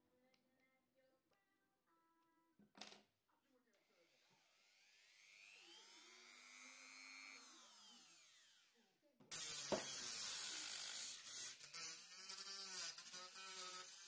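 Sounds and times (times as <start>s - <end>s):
hissing cutting noise with whine: 4.5s - 8.7s, 9.3s - 14.0s
rotary tool spinning: 4.8s - 8.7s, 9.3s - 14.0s.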